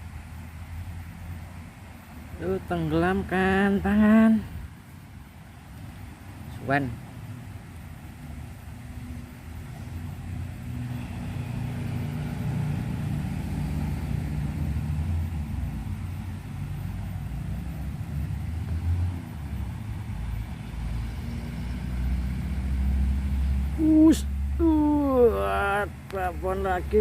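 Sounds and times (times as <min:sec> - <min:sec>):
low engine-like rumble: 0:00.0 - 0:27.0.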